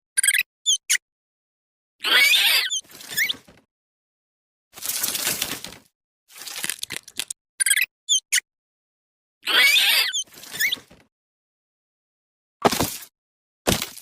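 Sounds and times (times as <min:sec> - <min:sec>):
rat squeaking: 0:00.2 - 0:01.0, 0:02.0 - 0:03.4, 0:07.6 - 0:08.4, 0:09.4 - 0:10.8.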